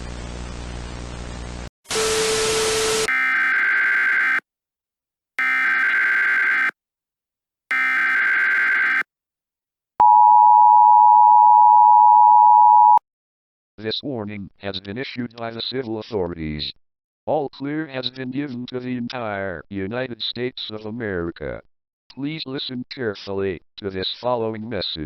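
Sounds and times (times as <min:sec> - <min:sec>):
buzzing digital data tones: 0:07.7 - 0:09.0
two-tone attention signal: 0:10.0 - 0:13.0.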